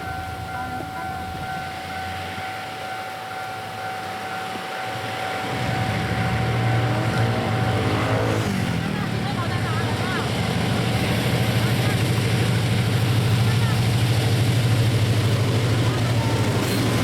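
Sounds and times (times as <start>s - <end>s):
level crossing warning tone: 0.0s - 17.0s
low engine rumble: 5.4s - 17.0s.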